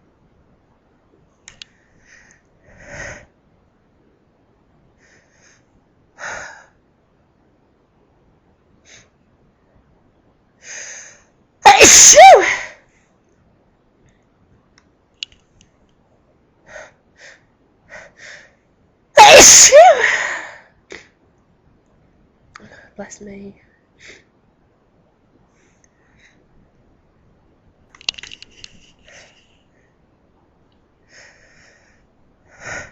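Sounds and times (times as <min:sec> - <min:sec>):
woman sneezing loudly: 0:11.6 - 0:12.8, 0:19.2 - 0:20.6.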